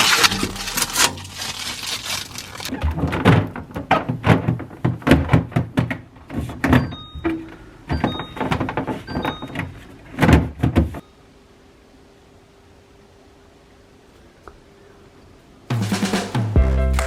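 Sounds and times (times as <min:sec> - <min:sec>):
containers knocking and clattering: 0:00.0 - 0:11.0.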